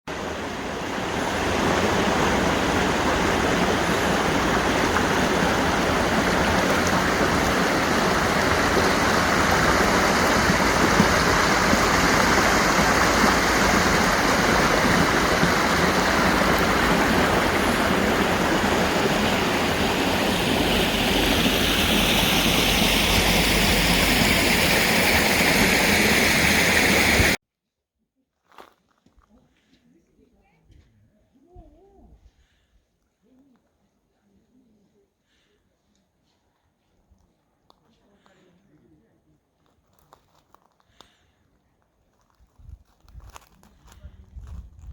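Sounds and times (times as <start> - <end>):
water rushing in a stream: 0.1 - 27.4.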